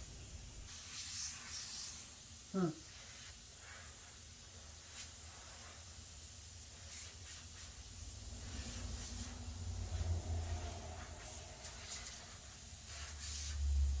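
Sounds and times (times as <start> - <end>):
compressed air hissing: 0.0 - 14.0
low rumble: 8.4 - 12.3.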